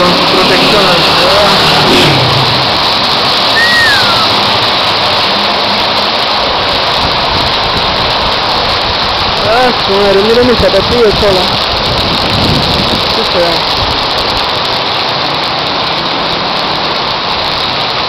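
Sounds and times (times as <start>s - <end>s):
heavy rain pouring: 0.0s - 18.0s
falling whistle-like note: 3.5s - 4.5s.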